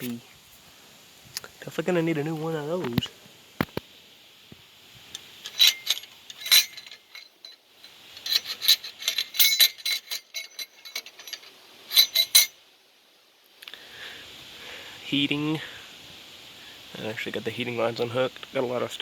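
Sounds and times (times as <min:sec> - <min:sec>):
metallic clicks and clinks: 0:05.1 - 0:12.6.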